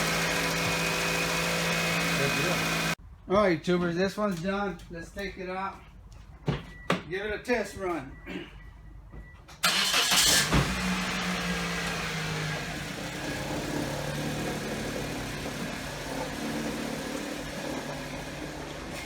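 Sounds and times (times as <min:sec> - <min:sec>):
car engine running: 0:00.0 - 0:03.0, 0:09.7 - 0:19.0.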